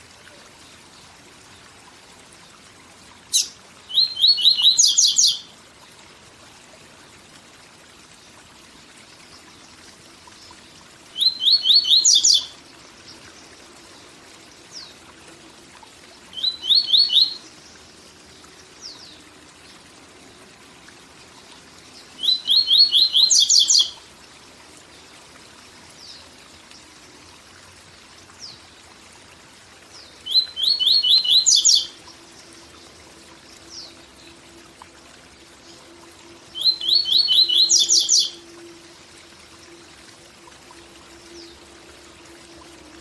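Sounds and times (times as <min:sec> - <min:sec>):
bird singing trills: 0:03.3 - 0:05.5, 0:11.1 - 0:12.6, 0:16.3 - 0:17.5, 0:22.2 - 0:24.0, 0:30.2 - 0:32.0, 0:36.5 - 0:38.6.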